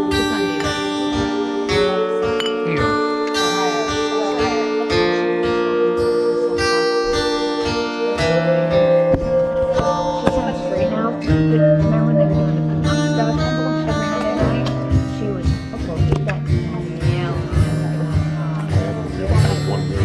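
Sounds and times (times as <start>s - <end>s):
acoustic guitar strummed and plucked: 0.0s - 20.0s
bass line: 8.2s - 20.0s.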